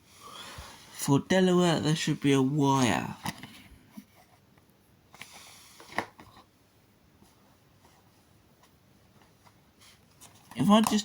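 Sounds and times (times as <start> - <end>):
rubbing and rustling: 7.1 - 11.0.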